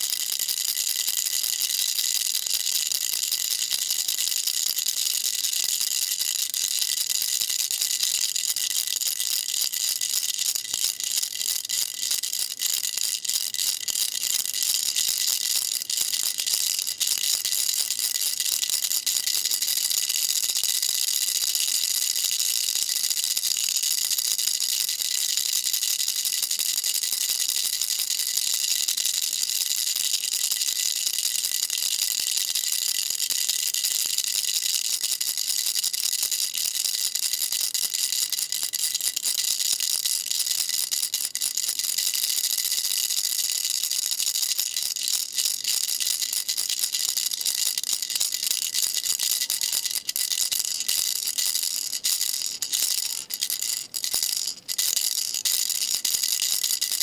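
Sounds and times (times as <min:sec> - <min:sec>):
baby rattle shaking: 0:00.0 - 0:57.0.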